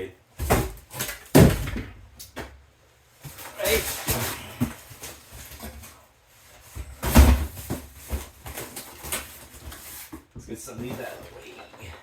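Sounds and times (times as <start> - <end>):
box thudding down: 0.4 - 2.5, 6.8 - 8.6
cardboard boxes rustling and scraping: 3.2 - 12.0.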